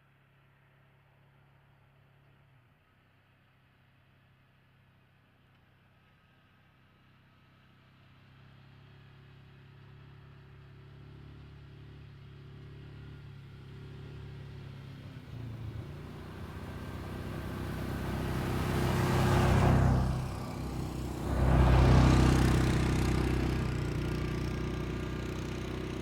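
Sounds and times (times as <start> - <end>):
atv engine approaching: 8.8 - 26.0.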